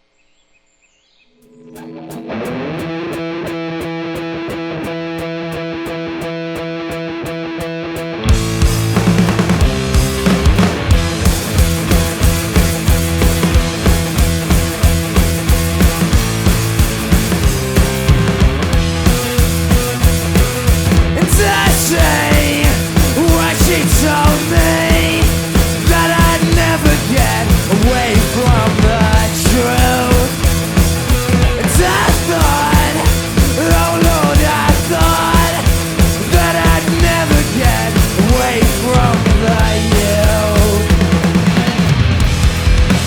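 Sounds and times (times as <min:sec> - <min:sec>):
rock band playing live: 0:01.4 - 0:43.0.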